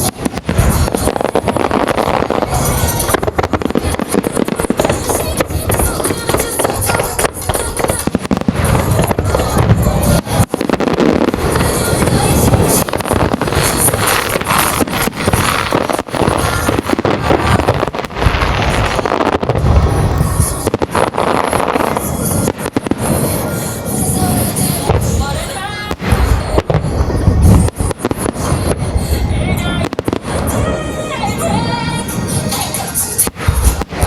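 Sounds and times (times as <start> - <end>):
fireworks bursting with bangs: 0.0 - 34.0
music from loudspeakers: 23.0 - 34.0.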